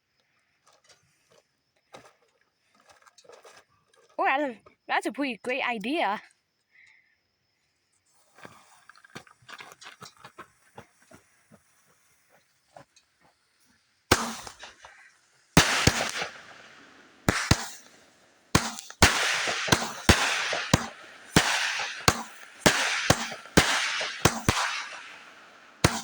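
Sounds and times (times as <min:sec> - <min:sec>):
firework bangs: 0:14.1 - 0:14.9, 0:15.6 - 0:26.0
crackling hiss: 0:14.1 - 0:26.0.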